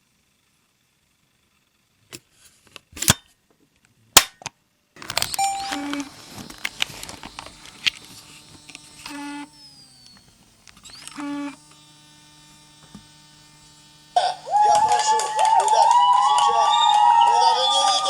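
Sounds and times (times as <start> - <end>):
camcorder mechanism clicks: 5.0 - 16.0
short motor buzzes: 5.0 - 18.0
steady electrical hum: 5.0 - 18.0.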